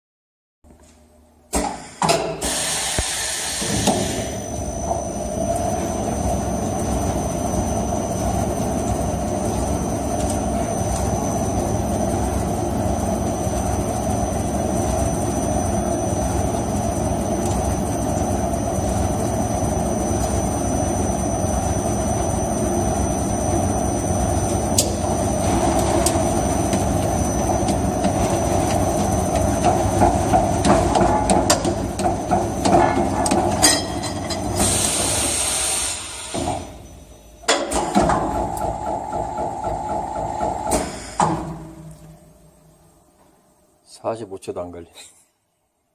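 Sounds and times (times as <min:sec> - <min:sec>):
metal clanks and knocks: 0:29.4 - 0:34.5.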